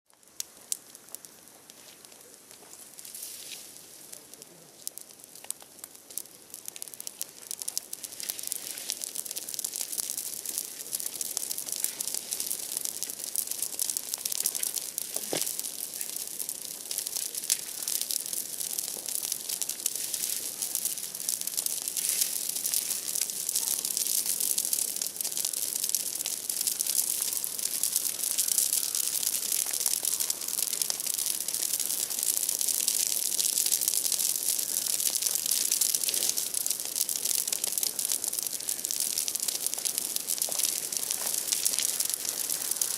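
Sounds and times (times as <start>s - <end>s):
bonfire crackling and popping: 0.1s - 42.9s.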